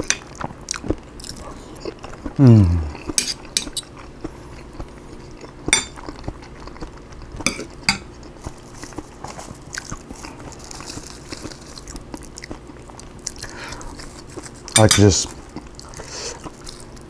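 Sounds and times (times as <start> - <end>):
chewing: 0.0 - 17.0
spoon clinking against a dish: 3.2 - 3.9, 5.7 - 6.1, 7.4 - 8.1, 14.7 - 15.3.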